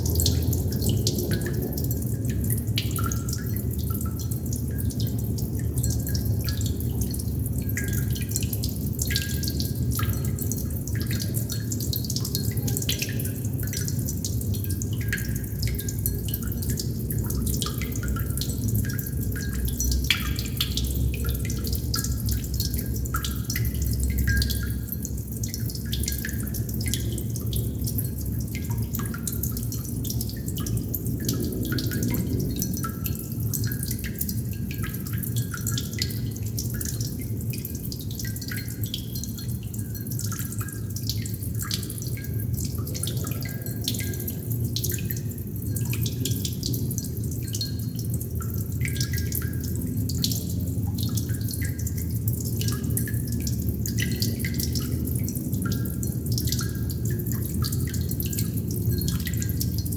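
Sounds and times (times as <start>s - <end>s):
water droplets dripping: 0.0s - 59.9s
steady low rumble: 13.3s - 35.5s.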